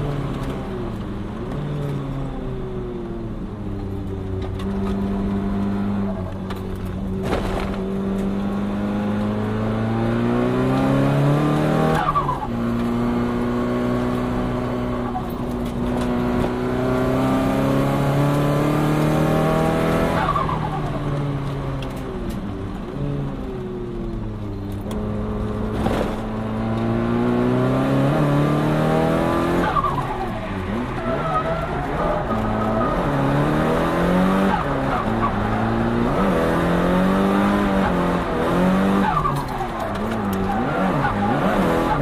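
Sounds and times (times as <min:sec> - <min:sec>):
turbocharged car engine revving: 0:07.2 - 0:20.6, 0:24.9 - 0:42.0.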